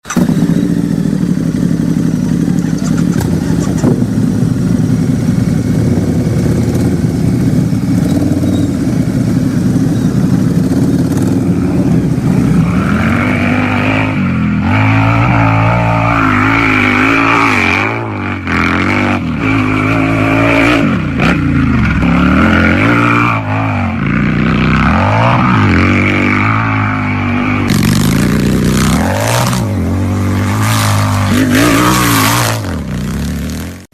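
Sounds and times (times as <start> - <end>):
motorcycle engine idling: 0.0 - 12.6
motorcycle engine revving: 0.0 - 33.9.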